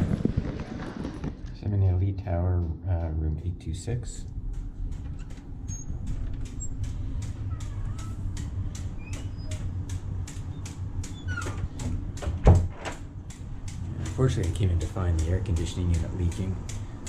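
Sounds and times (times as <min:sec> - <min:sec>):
steady low hum: 0:00.0 - 0:17.0
sharp clicks: 0:04.2 - 0:17.0
faint squeaks: 0:05.1 - 0:06.8, 0:07.4 - 0:08.3
door shutting with a thud: 0:11.3 - 0:13.0.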